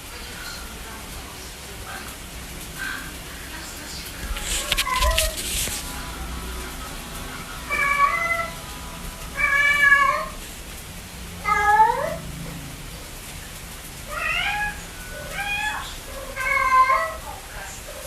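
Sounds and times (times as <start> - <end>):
kittens mewing: 7.6 - 8.6, 9.3 - 10.4, 11.4 - 12.3, 14.1 - 17.3.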